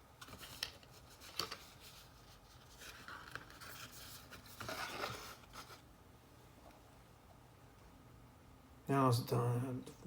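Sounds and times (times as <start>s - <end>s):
rustling handling noise: 0.2s - 5.9s.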